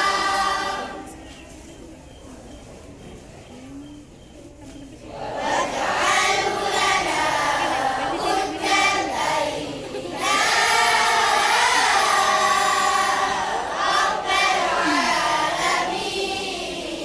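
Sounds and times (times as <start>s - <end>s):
crowd chanting in unison: 0.0s - 1.2s, 5.1s - 17.0s.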